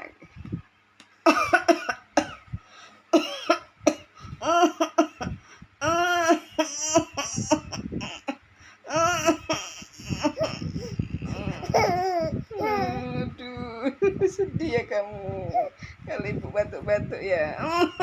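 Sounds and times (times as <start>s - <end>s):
woman coughing: 1.3s - 2.5s, 3.2s - 5.4s
pitched vocal sounds: 8.9s - 13.9s.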